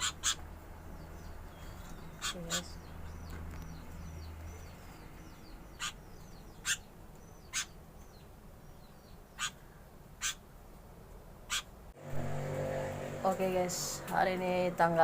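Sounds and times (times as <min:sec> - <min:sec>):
songbird chip calls: 0:00.0 - 0:00.4, 0:01.0 - 0:10.4
small bird chirps: 0:00.0 - 0:10.4.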